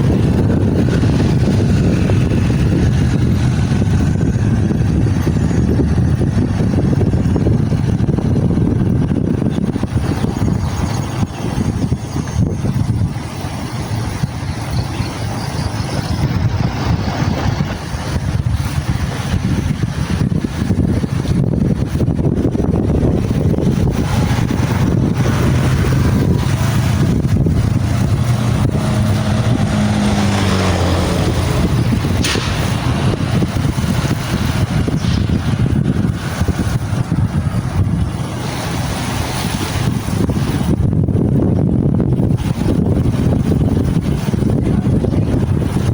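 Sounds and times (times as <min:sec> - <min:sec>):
wind buffeting microphone: 0:00.0 - 0:45.9
motor humming: 0:23.2 - 0:39.5.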